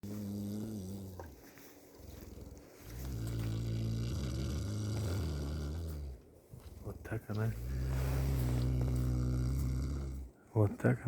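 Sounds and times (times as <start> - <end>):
cow snoring: 0.0 - 1.4, 2.2 - 6.2, 7.5 - 10.4.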